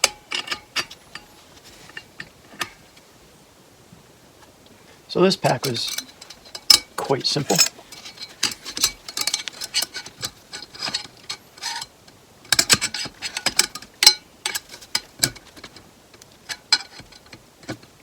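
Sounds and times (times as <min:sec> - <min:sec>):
metal parts clicking and clinking: 0:00.0 - 0:01.3, 0:05.6 - 0:11.9.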